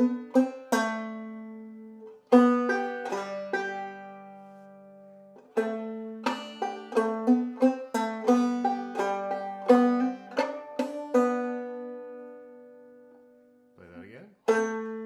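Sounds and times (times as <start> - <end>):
banjo picking: 0.0 - 15.0.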